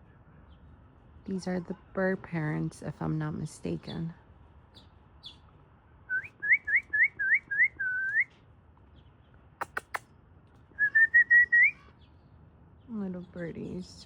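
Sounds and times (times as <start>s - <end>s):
short sharp clicks: 9.6s - 10.1s.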